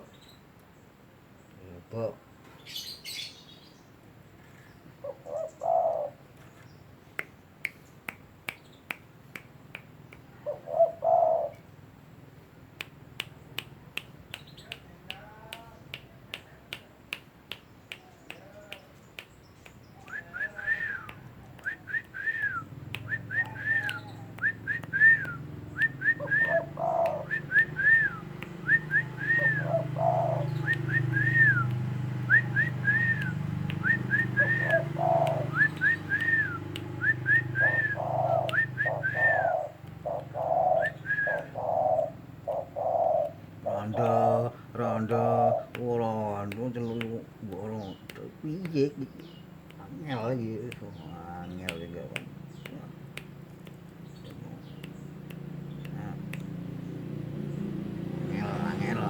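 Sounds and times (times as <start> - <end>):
dove cooing: 5.0 - 6.2, 10.4 - 11.7, 23.1 - 31.6, 33.8 - 45.7, 57.2 - 59.0
sharp repeated clicks: 12.8 - 20.2, 51.6 - 56.8
chirping whistles: 19.9 - 43.4
low hum: 20.8 - 38.9.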